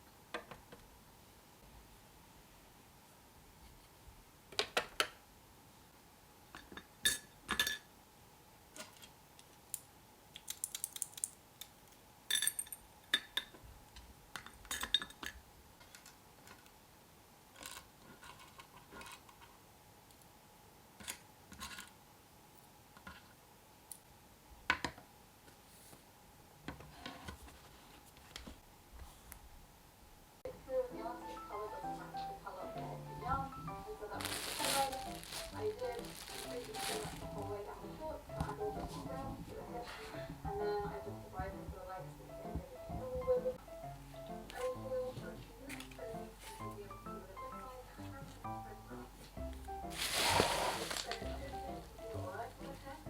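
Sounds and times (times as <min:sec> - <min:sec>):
small hard objects clinking: 0:34.2 - 0:37.4, 0:49.9 - 0:51.3.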